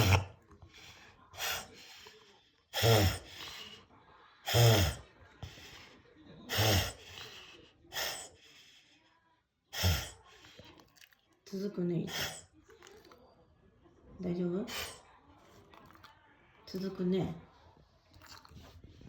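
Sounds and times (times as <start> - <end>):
dog reverse sneezing: 0.0 - 0.3.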